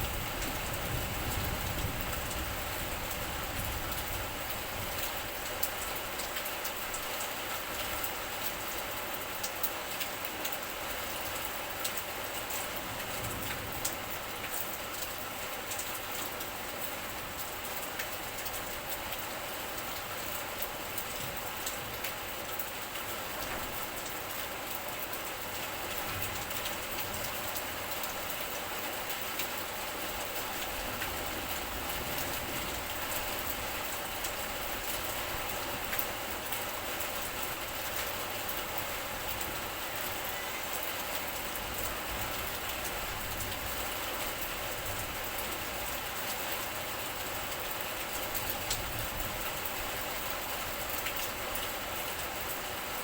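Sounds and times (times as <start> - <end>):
steady rain falling: 0.0 - 53.0.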